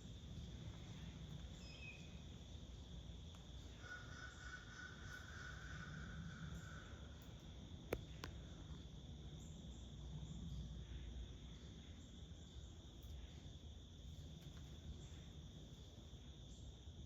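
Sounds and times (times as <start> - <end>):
low outdoor rumble: 0.0 - 3.8
insects droning: 0.0 - 17.0
faint steady whistle: 1.5 - 2.2.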